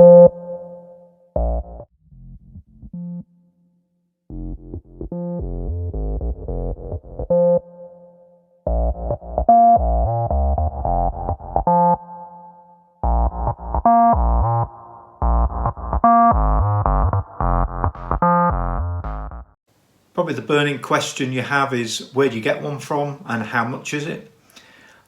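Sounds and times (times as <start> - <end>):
synthesizer melody with heavy bass: 0.0 - 3.3, 4.3 - 19.6.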